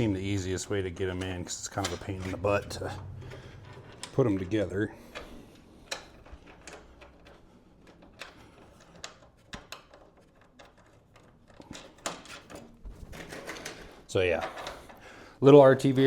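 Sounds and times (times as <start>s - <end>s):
metal parts clicking and tapping: 3.0s - 15.0s.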